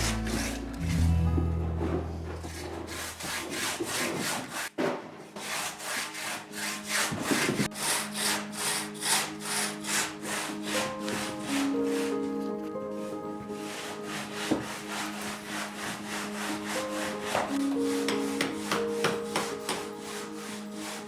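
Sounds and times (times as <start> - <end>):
handsaw cutting stone: 0.0 - 0.7, 2.5 - 12.3, 13.6 - 21.0.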